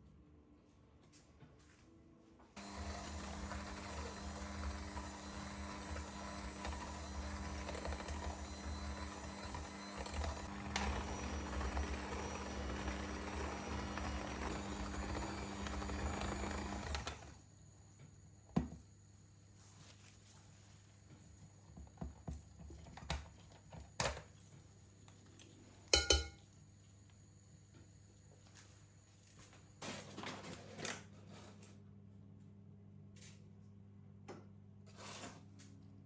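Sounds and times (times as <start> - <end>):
small electric motor humming: 2.6 - 17.3.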